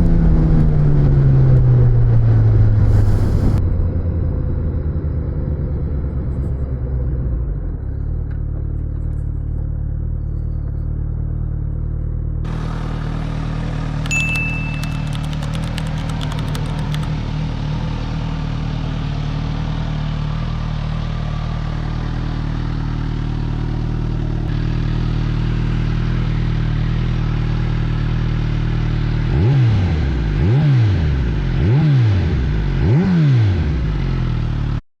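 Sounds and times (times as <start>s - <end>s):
motorcycle engine idling and revving: 0.0s - 34.8s
short high beep: 14.1s - 15.6s.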